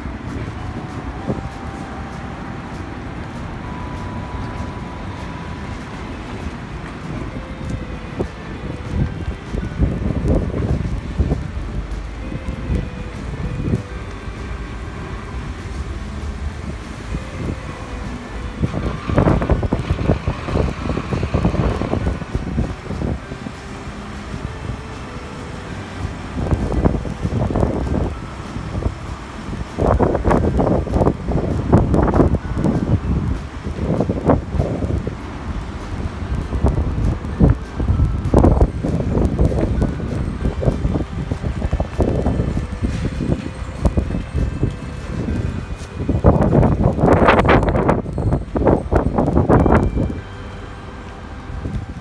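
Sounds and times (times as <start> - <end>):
faint steady tones: 0.0 - 52.0
wind buffeting microphone: 0.0 - 52.0.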